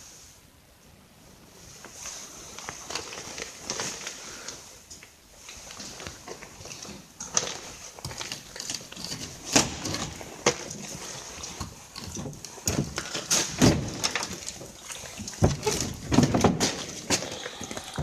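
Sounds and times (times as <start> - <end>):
steady hiss: 0.0 - 8.0.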